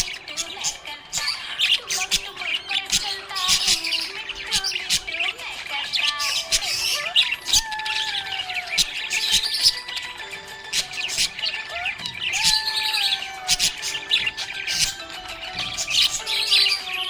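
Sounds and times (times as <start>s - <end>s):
parrots chirping and squawking: 0.0s - 17.0s
whistled notes: 1.2s - 17.0s.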